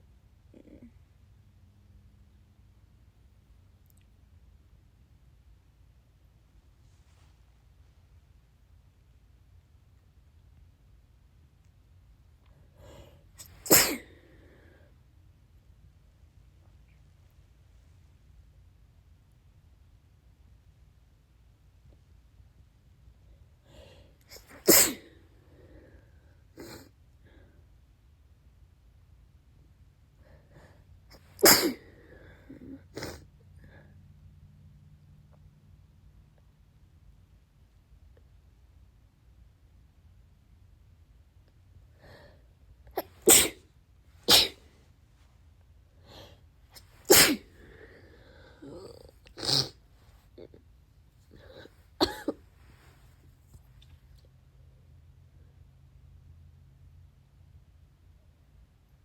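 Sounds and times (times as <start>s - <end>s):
person sneezing: 12.8s - 14.6s, 23.8s - 25.2s, 26.6s - 26.9s, 31.1s - 33.3s, 42.9s - 44.8s, 46.0s - 49.8s, 51.3s - 53.1s
faint breaths: 14.0s - 15.1s, 31.8s - 34.2s, 44.6s - 50.4s.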